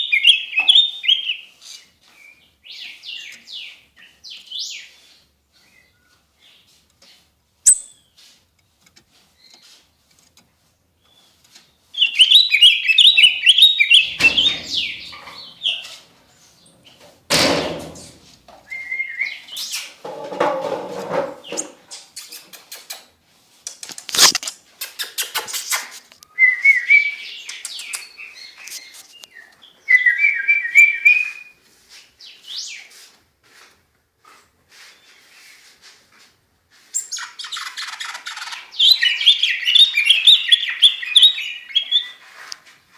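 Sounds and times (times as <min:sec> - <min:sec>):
songbird singing trilled phrases: 0:07.7 - 0:08.0, 0:12.0 - 0:16.0, 0:37.0 - 0:42.1
sharp knocks: 0:14.0 - 0:15.6, 0:17.3 - 0:18.4.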